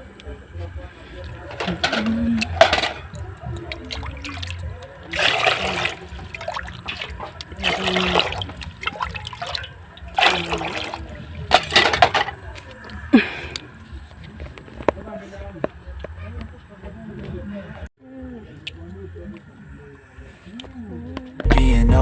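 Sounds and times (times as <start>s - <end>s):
water splashing: 2.5s - 12.0s.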